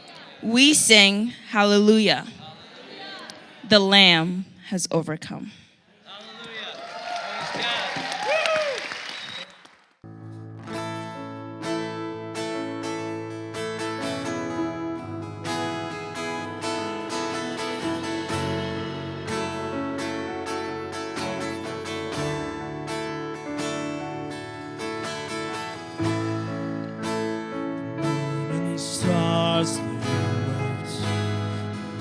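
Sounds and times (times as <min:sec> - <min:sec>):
strummed acoustic guitar: 0:10.1 - 0:32.0
worship band playing: 0:10.7 - 0:32.0.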